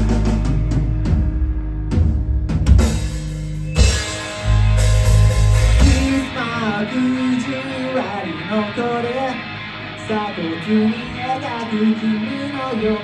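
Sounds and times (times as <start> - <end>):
drums and bass: 0.0 - 8.2
sustained guitar chords: 0.0 - 13.0
crashing cymbals: 2.8 - 6.3
bending melody line: 2.8 - 7.7.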